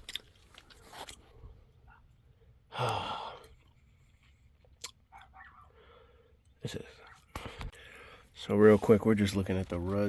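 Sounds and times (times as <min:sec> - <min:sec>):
man sighing: 0:02.7 - 0:03.6.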